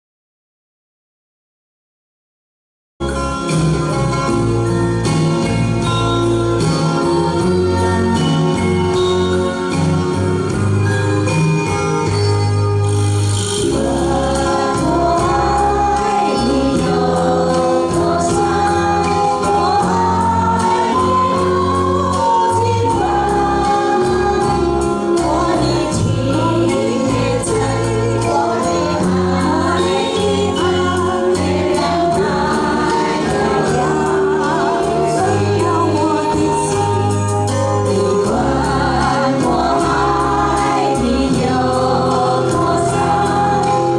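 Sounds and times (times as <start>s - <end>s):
accompaniment with steady beat: 3.0s - 43.9s
group singing slow song: 12.9s - 43.9s.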